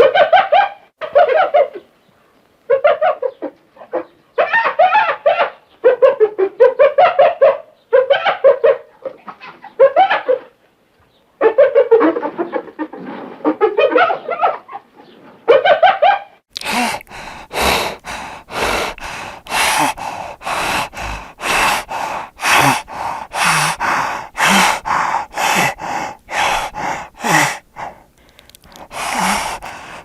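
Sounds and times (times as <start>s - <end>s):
hyena huffing and grunting: 16.6s - 30.0s.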